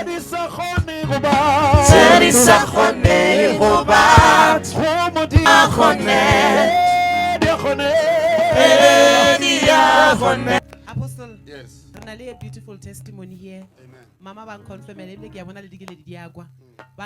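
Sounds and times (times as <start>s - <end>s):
person singing gospel: 0.0s - 10.6s
low drum beat: 1.6s - 4.6s, 5.4s - 6.8s.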